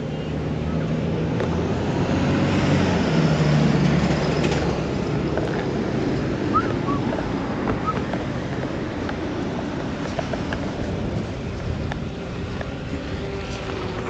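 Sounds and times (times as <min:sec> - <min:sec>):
wind noise on microphone: 0:06.5 - 0:14.0.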